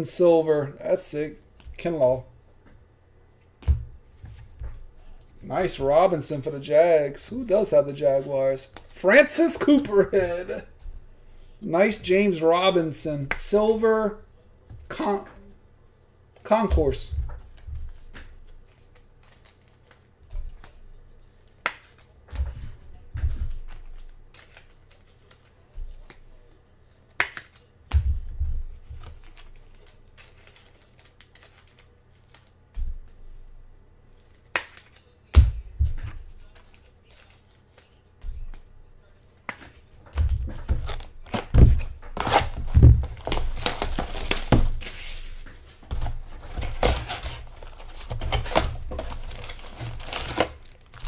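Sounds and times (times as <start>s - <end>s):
card pack wrappers crinkling and tearing: 7.5s - 10.7s, 24.0s - 26.4s, 29.0s - 32.6s, 40.7s - 51.0s
cards and packaging tapping: 27.1s - 38.6s, 39.4s - 51.0s.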